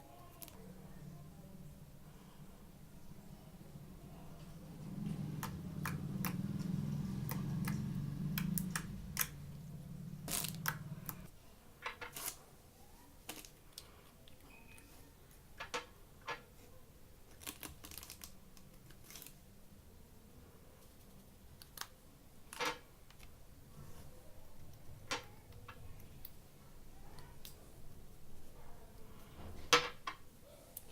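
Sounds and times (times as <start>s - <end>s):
low hum: 0.6s - 11.3s.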